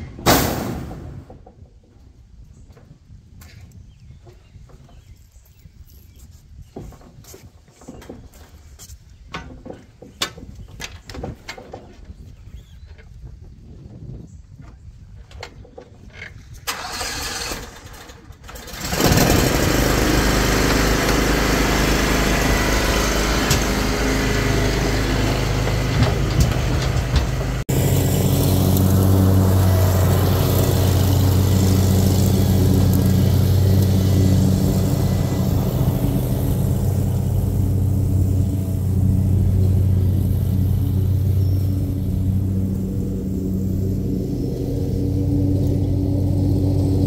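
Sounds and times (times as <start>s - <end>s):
lawn mower engine running: 16.7s - 47.0s.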